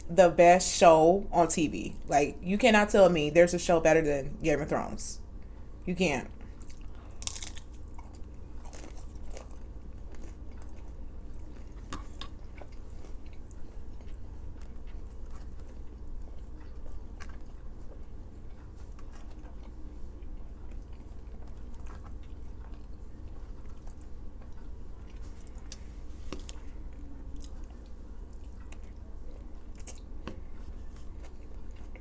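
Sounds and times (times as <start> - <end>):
steady low hum: 0.0 - 32.0
person chewing food: 6.4 - 32.0
crisp crunches: 6.6 - 10.8.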